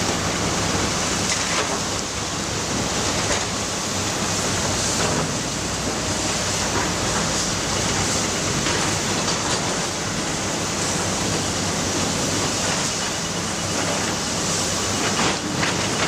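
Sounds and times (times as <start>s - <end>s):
excavator engine running: 0.0s - 16.0s.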